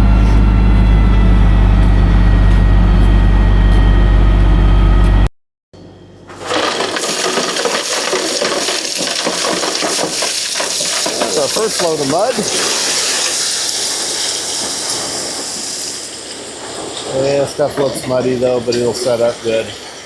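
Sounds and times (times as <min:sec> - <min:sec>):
rock and dirt being dumped: 0:06.2 - 0:20.0.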